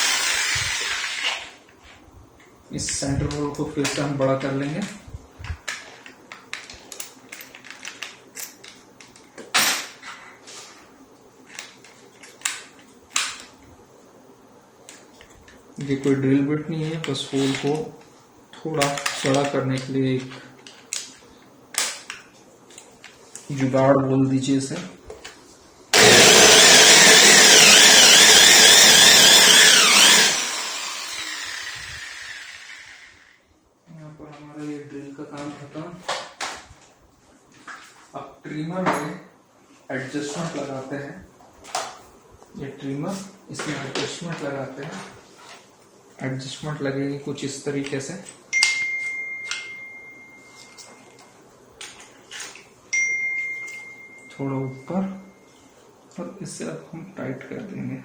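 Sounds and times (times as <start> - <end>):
electric drill whining: 0.0 - 1.6, 26.0 - 33.3.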